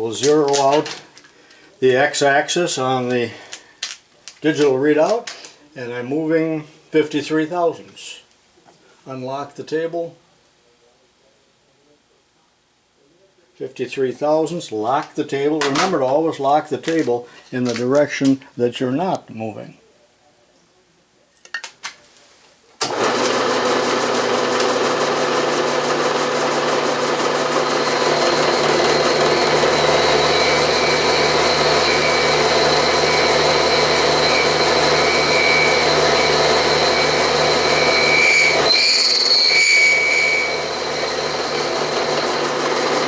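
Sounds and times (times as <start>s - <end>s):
milling machine cutting steel: 22.8s - 43.0s
high machine whine: 22.9s - 43.0s.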